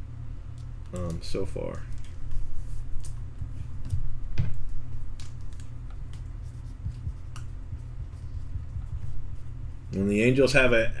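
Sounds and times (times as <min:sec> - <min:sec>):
steady low hum: 0:00.0 - 0:11.0
light clicks and handling noises: 0:00.5 - 0:08.2.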